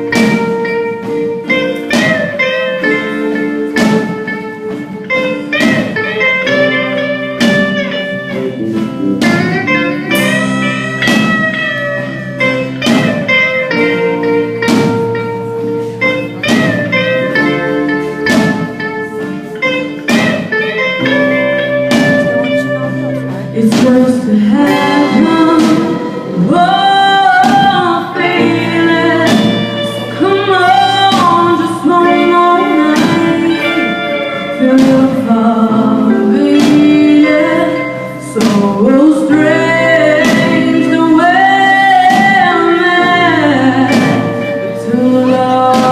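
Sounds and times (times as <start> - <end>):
live rock band playing: 0.0 - 45.9
woman singing: 23.3 - 45.9.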